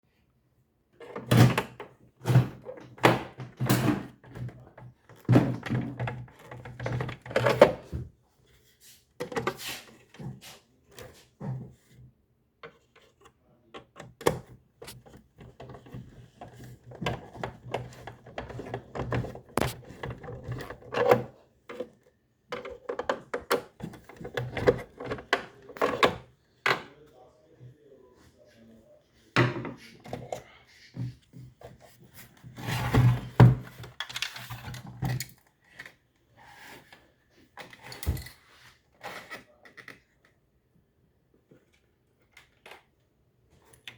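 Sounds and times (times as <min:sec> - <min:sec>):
hard objects knocking and clicking: 0:13.8 - 0:21.2, 0:22.5 - 0:26.9.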